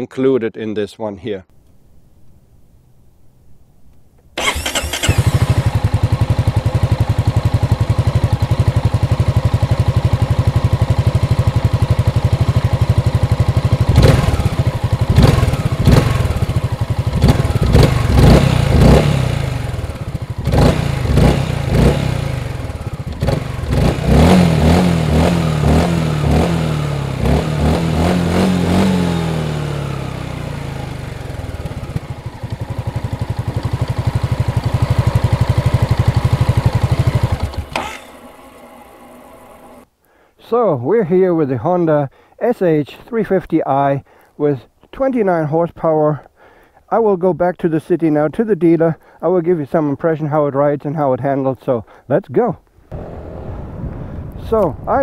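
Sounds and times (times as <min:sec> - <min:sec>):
scooter engine idling and revving: 0:04.4 - 0:39.9, 0:52.9 - 0:53.4.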